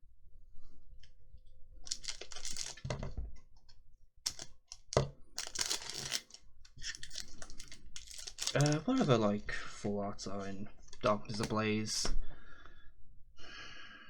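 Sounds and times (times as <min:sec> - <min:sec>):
foil wrapper crinkling: 0:01.9 - 0:02.9, 0:04.3 - 0:09.1.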